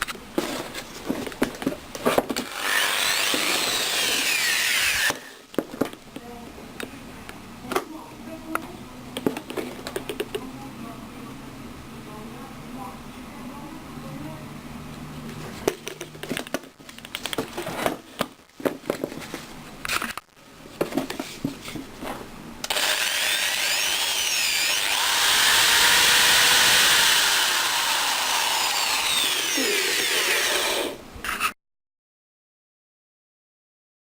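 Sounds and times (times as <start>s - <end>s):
impact drill running: 2.4s - 5.4s, 22.7s - 31.0s.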